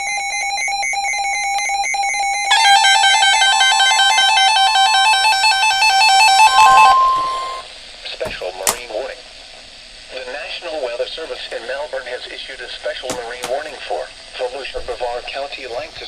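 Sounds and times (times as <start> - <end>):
steady beeping tone: 0.0 - 7.7
long steady tone: 0.0 - 8.0
warbling alert tones: 2.5 - 7.7.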